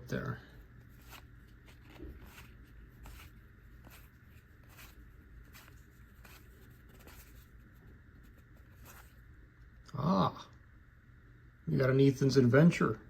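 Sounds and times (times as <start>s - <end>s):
soft card swishes: 0.8s - 9.2s.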